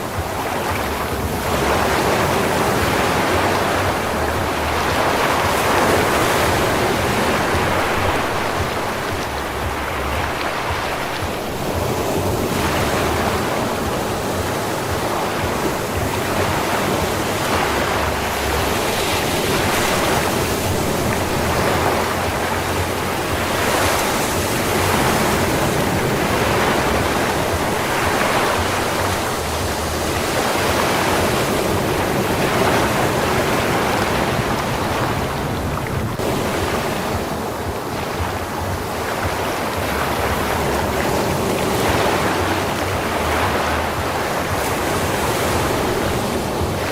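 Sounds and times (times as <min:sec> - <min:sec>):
waves washing onto beach: 0:00.0 - 0:46.9.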